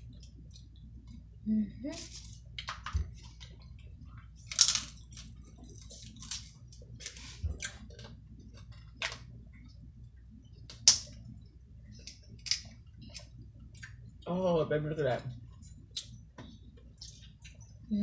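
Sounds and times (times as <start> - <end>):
crab legs cracking: 12.0 - 14.1.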